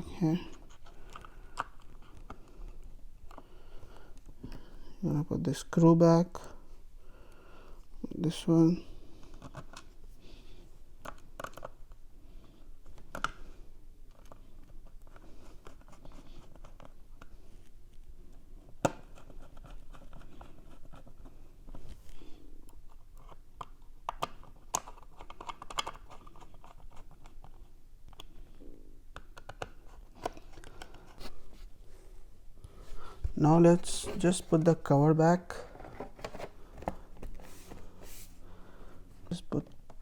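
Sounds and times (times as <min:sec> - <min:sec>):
tool scratching and parts handled: 0:32.8 - 0:38.4.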